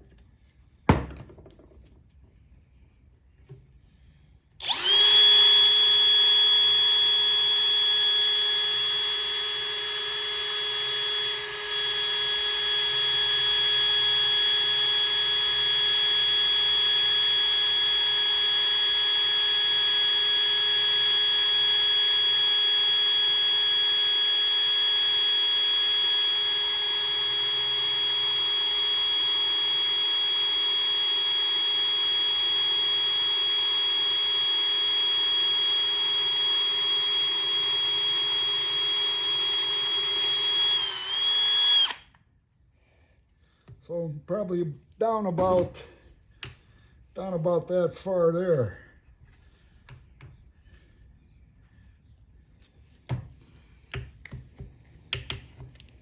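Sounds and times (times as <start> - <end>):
electric drill whining: 4.6 - 42.3.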